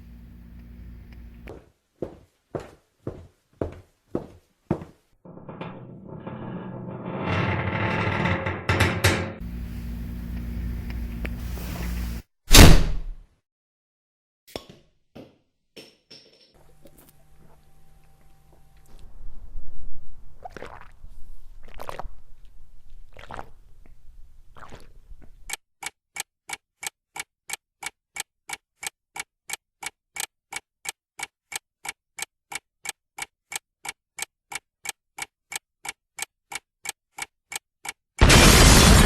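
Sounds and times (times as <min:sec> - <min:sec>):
clock ticking: 0:25.8 - 0:38.0
loud burst of noise: 0:38.2 - 0:39.0.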